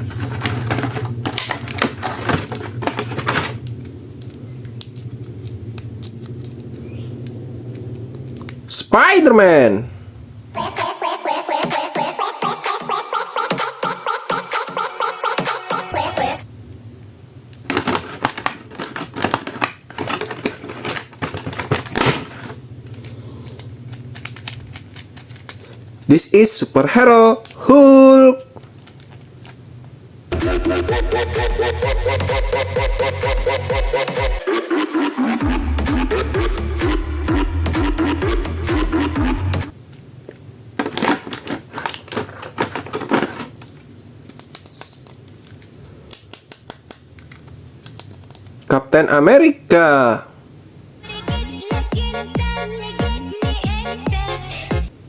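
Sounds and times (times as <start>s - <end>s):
plastic packaging crinkling: 0.0s - 6.9s, 17.6s - 26.1s, 27.3s - 27.6s, 28.4s - 29.6s, 39.9s - 48.7s
plastic toy parts clicking: 40.3s - 48.7s.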